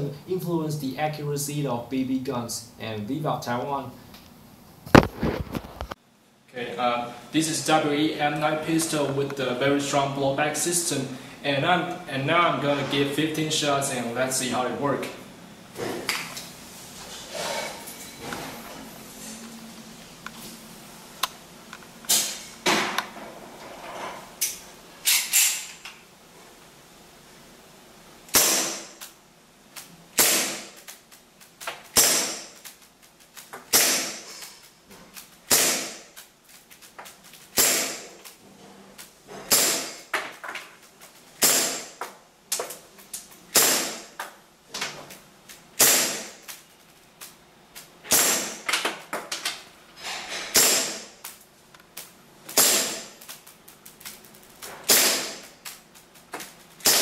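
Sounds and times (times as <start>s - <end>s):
airsoft pistol shots: 28.3s - 29.0s, 30.2s - 30.8s, 31.9s - 32.6s, 33.7s - 34.3s, 35.5s - 36.1s, 37.5s - 38.2s, 39.5s - 40.1s, 41.4s - 42.0s, 43.5s - 44.1s, 45.8s - 46.4s, 48.1s - 48.7s, 50.5s - 51.2s, 52.5s - 53.2s, 54.8s - 55.5s, 56.8s - 57.0s.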